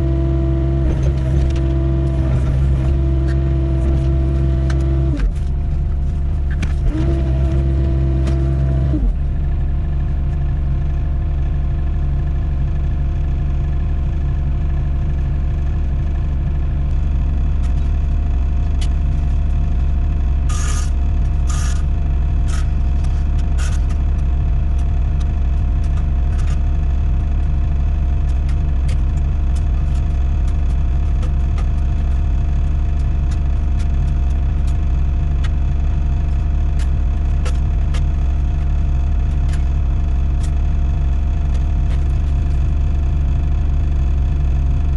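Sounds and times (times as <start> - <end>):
excavator diesel engine digging: 0.0 - 9.2, 17.1 - 43.7
high steady whine: 16.2 - 44.9.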